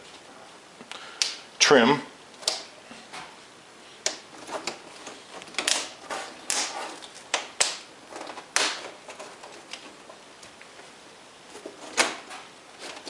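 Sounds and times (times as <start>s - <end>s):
plastic clips clicking: 2.4s - 2.7s, 4.0s - 10.7s.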